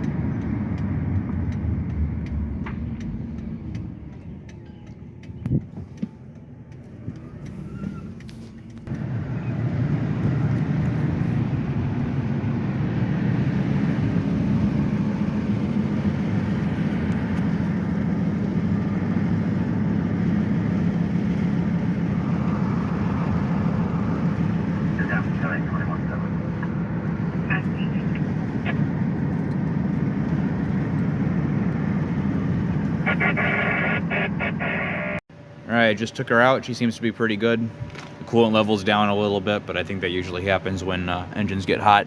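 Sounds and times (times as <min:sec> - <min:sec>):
truck engine and road noise: 0:00.0 - 0:42.0.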